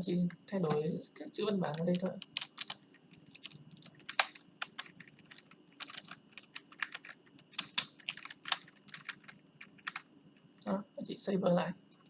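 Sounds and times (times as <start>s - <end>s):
typing on computer keyboard: 1.7s - 10.1s.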